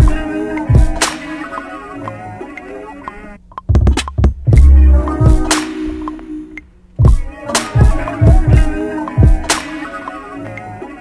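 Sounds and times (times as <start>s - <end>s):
kick drums: 0.0s - 1.0s, 3.6s - 6.2s, 7.0s - 9.5s
snare or clap hit: 1.0s - 1.4s, 5.4s - 6.3s, 9.4s - 9.8s.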